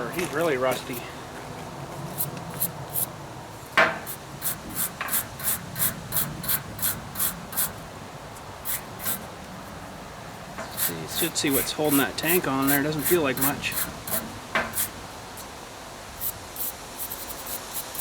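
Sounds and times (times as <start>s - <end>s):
wire brush scrubbing metal bolt: 8.6s - 9.3s, 10.6s - 15.5s, 16.2s - 18.0s.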